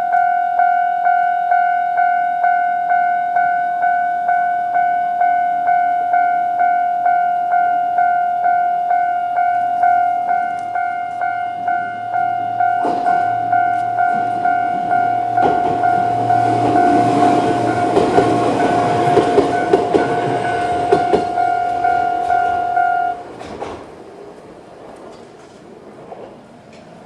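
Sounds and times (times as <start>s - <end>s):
level crossing alarm bell: 0.0s - 23.2s
train wheels clacking over rail joints: 10.4s - 27.0s.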